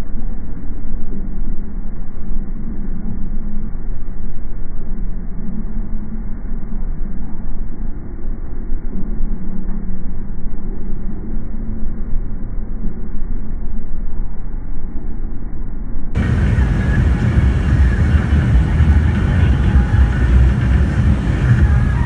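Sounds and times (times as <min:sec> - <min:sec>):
car driving rumble: 0:16.2 - 0:22.0
high whining tones: 0:16.2 - 0:22.0.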